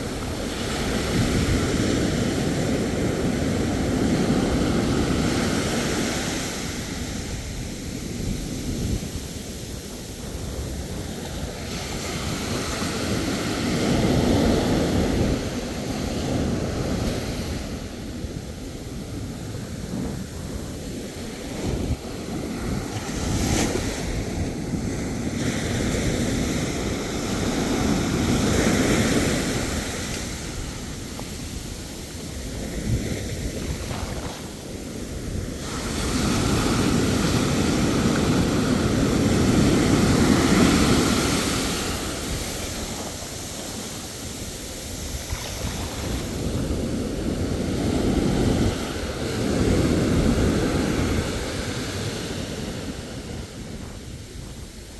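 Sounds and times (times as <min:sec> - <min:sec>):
waves breaking: 0:00.0 - 0:54.9
wind rumbling on microphone: 0:00.0 - 0:54.9.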